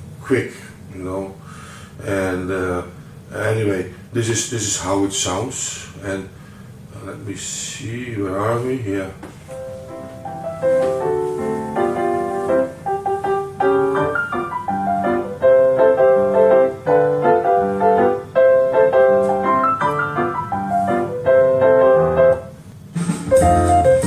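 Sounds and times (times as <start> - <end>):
solo piano music over loudspeakers: 8.6 - 22.6, 23.3 - 24.0.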